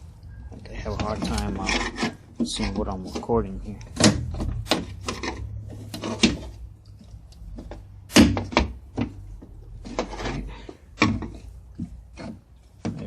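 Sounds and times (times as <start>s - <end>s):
screwdriver scraping plastic: 0.8s - 7.8s, 9.8s - 13.0s.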